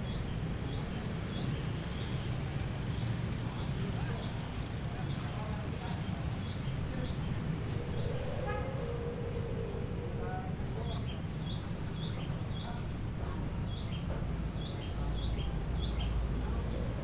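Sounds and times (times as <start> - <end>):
steady low rumble: 7.2 - 12.1, 15.5 - 17.0.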